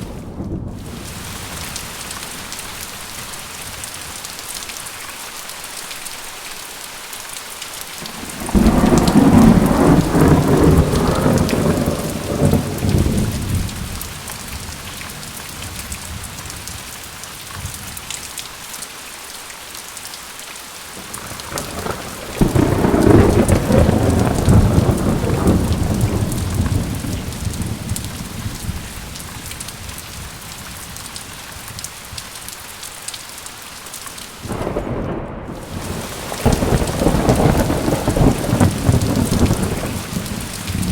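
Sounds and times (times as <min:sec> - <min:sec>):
thunder rolling: 0:00.0 - 0:01.8, 0:08.1 - 0:14.7, 0:21.0 - 0:29.1, 0:34.4 - 0:40.9
steady rain falling: 0:00.0 - 0:40.9.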